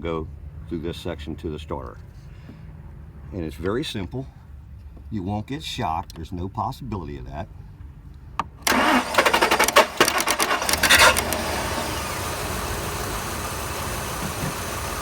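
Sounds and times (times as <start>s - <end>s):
starter solenoid click: 8.6s - 11.7s
engine cranking and idling: 8.6s - 15.0s.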